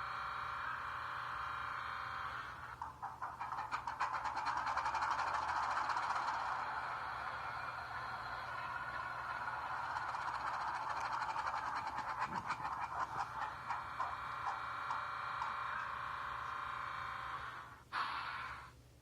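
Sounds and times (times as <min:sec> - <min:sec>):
steam engine sound from speaker: 0:00.0 - 0:19.0
short hiss burst: 0:17.9 - 0:18.8.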